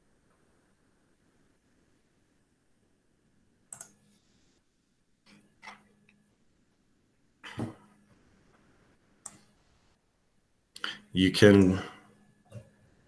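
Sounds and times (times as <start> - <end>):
computer mouse clicks: 3.7 - 4.2, 9.2 - 9.5.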